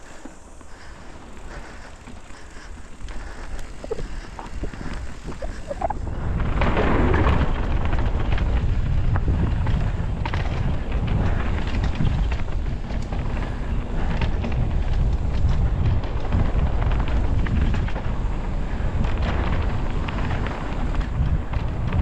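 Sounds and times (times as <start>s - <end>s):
bike tyre and frame rumble: 0.0s - 22.0s
wind buffeting microphone: 0.0s - 22.0s
short squeaks: 5.2s - 6.0s.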